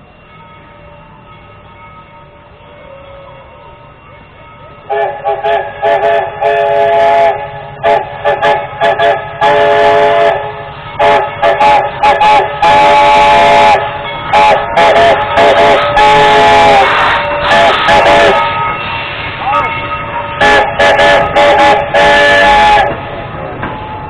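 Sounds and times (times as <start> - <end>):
train chime whistle toots: 4.9 - 23.0.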